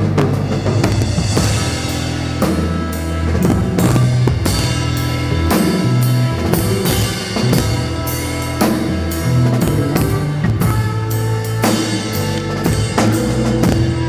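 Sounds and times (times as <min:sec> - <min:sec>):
live band playing: 0:00.0 - 0:14.0.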